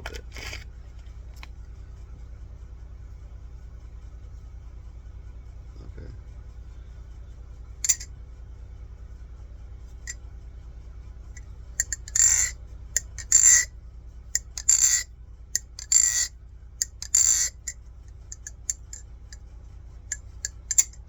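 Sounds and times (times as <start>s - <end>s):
butterfly knife rattling: 7.9s - 8.1s, 11.8s - 13.7s, 15.6s - 19.0s, 20.1s - 21.0s.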